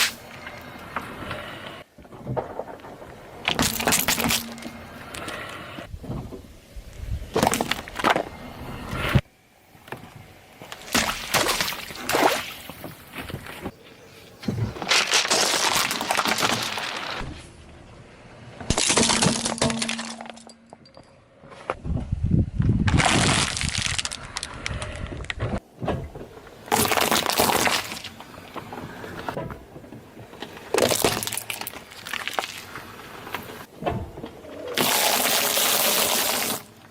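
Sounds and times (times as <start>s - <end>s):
brittle objects crunching under tyres: 2.4s - 5.4s, 6.9s - 8.4s, 14.4s - 17.3s, 18.6s - 20.6s, 22.6s - 25.6s, 26.4s - 29.3s, 30.2s - 33.7s, 34.5s - 36.9s.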